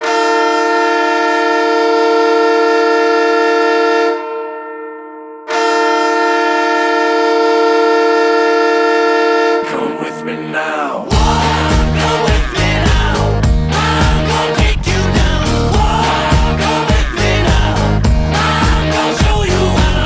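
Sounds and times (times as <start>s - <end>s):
goal horn blasts: 0.0s - 4.5s, 5.5s - 9.8s.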